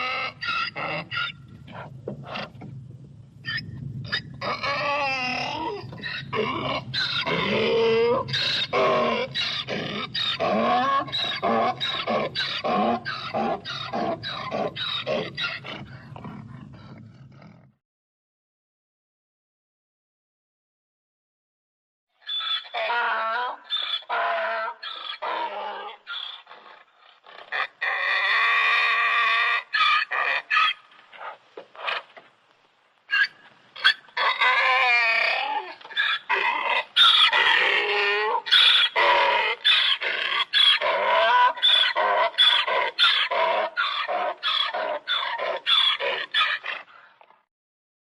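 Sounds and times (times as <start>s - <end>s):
donkey braying: 0.0s - 2.6s, 3.5s - 17.6s, 22.2s - 26.7s, 33.1s - 46.9s.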